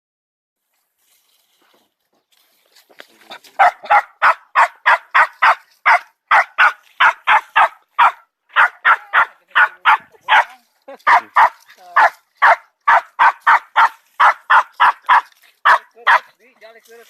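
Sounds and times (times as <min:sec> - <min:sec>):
small dogs barking: 0:03.5 - 0:16.4.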